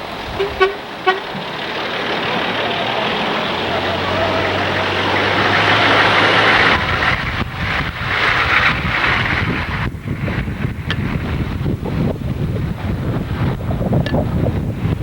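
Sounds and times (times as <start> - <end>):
passing traffic: 0.0 - 15.0
wind gusting against microphone: 0.0 - 15.0.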